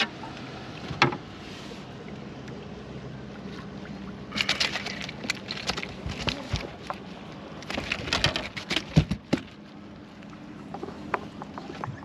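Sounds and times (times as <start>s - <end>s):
water noise: 0.0s - 12.0s.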